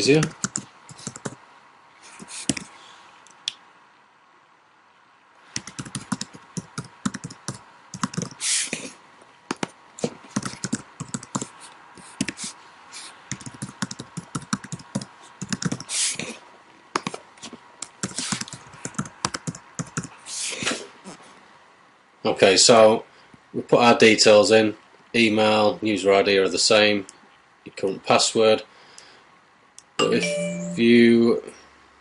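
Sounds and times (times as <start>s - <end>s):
typing on computer keyboard: 0.2s - 1.4s, 5.5s - 8.4s, 10.3s - 11.5s, 13.3s - 15.9s, 17.9s - 20.2s.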